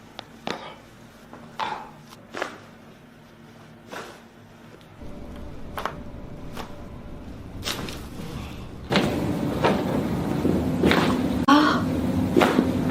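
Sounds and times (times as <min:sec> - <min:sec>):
low hum: 0:04.9 - 0:12.1.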